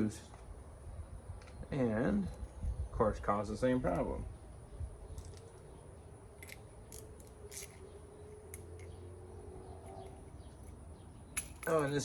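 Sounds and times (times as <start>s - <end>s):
screwdriver clicking and scraping: 6.4s - 7.8s.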